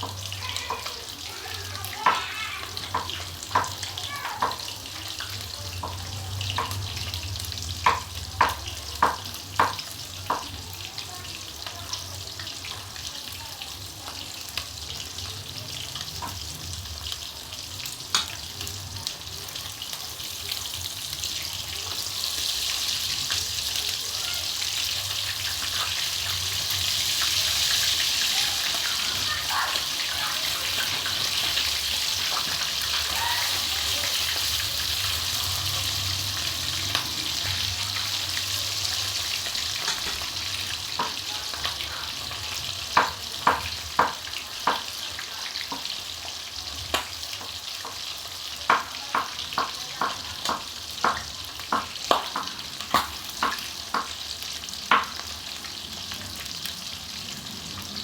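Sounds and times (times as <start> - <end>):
chicken sizzling in hot oil: 0.0 - 58.0.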